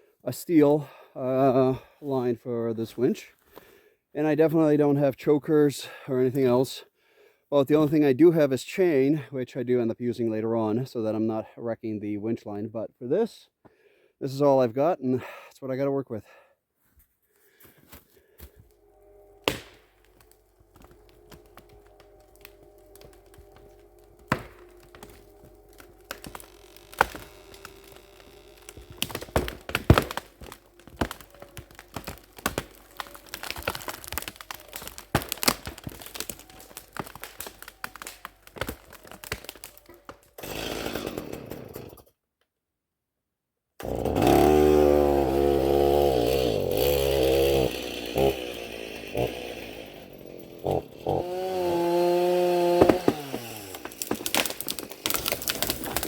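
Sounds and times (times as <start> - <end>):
chainsaw revving: 19.5 - 37.4, 40.4 - 42.0, 43.8 - 56.0.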